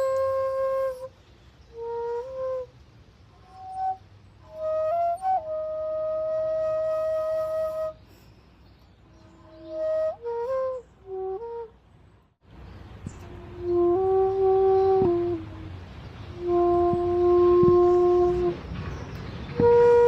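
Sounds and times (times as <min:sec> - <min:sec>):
solo flute melody: 0:00.0 - 0:08.3, 0:09.0 - 0:11.8, 0:13.1 - 0:20.0.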